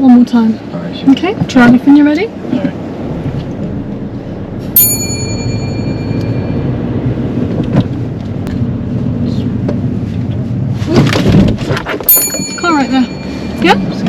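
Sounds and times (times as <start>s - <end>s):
car engine and road noise: 0.0s - 14.0s
bright ringing chime: 4.8s - 6.8s, 12.1s - 14.0s.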